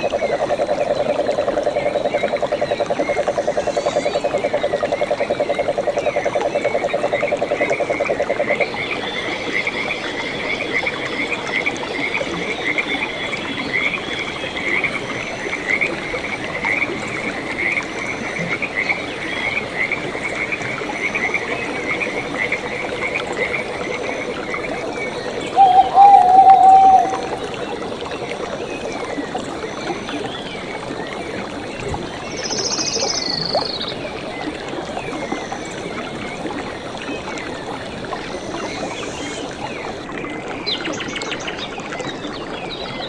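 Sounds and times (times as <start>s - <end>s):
frogs chirping: 0.0s - 34.4s
frog fast low trill: 25.5s - 27.5s.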